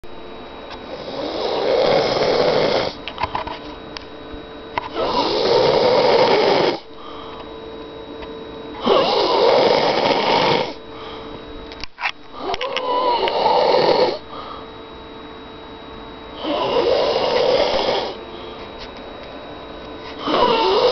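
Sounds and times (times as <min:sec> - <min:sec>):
woman snoring loudly: 0:00.9 - 0:03.0, 0:04.9 - 0:06.9, 0:08.8 - 0:10.8, 0:12.4 - 0:14.2, 0:16.4 - 0:18.2, 0:20.2 - 0:20.9
quiet breathing: 0:06.8 - 0:07.5, 0:10.9 - 0:11.4, 0:14.2 - 0:14.8.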